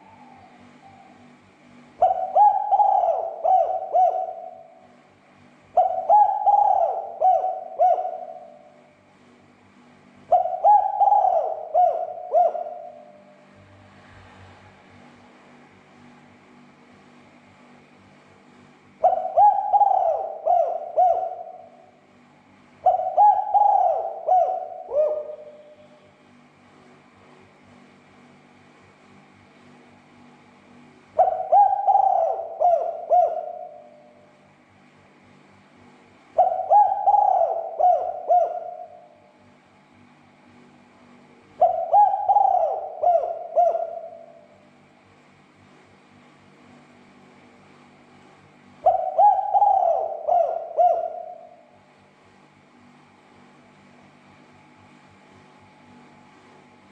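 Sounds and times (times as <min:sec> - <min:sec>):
dove cooing: 0:00.0 - 0:01.3, 0:02.0 - 0:05.0, 0:05.7 - 0:09.0, 0:10.2 - 0:13.4, 0:19.0 - 0:22.0, 0:22.8 - 0:26.1, 0:31.2 - 0:34.3, 0:36.4 - 0:39.2, 0:41.6 - 0:44.6, 0:48.8 - 0:51.8
faint steady hum: 0:00.0 - 0:56.9.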